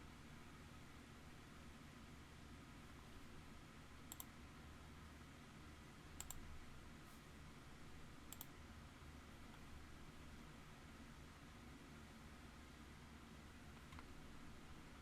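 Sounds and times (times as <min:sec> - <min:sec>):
faint room hum: 0:00.0 - 0:15.0
computer mouse double clicks: 0:06.2 - 0:06.4.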